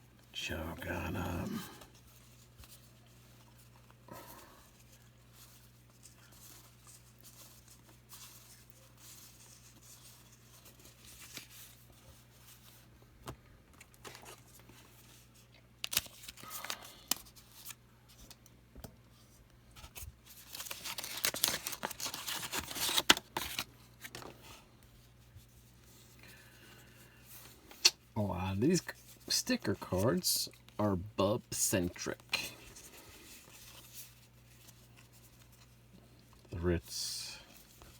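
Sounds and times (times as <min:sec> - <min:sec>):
wrappers tearing and crinkling: 0:15.8 - 0:17.8, 0:20.4 - 0:24.2.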